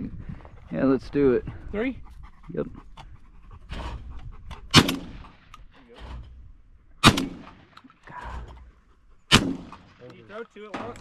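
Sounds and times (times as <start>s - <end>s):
shotgun shots echoing: 4.7s - 5.5s, 7.0s - 7.8s, 9.3s - 10.1s.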